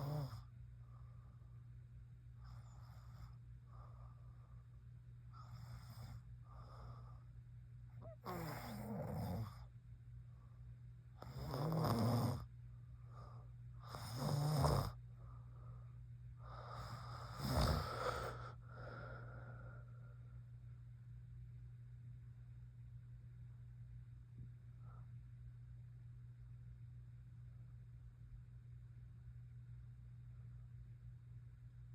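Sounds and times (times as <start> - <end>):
woman snoring: 0.0 - 0.4, 8.0 - 9.6, 11.2 - 12.5, 13.8 - 15.0, 16.5 - 19.7
faint breaths: 0.0 - 8.8, 12.6 - 14.2, 14.9 - 20.6.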